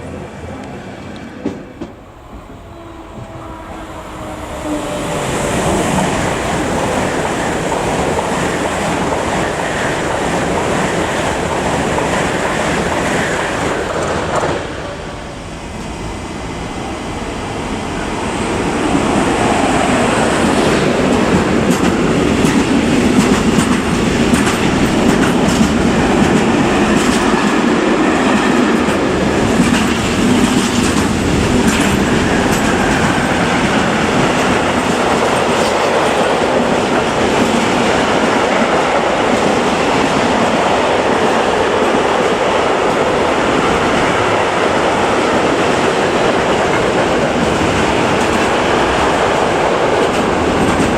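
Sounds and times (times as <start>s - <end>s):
train passing: 0.0s - 50.9s.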